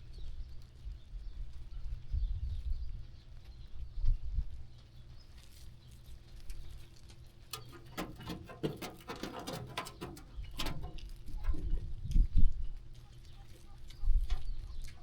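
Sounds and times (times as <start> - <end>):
sheep grazing crunching: 4.6 - 15.0.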